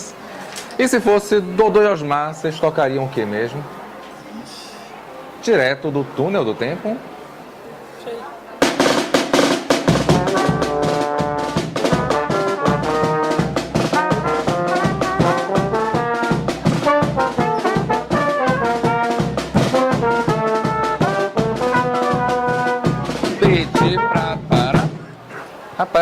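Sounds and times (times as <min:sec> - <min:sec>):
quick drum beat: 0:08.6 - 0:25.0
trumpets and trombones: 0:08.6 - 0:25.0.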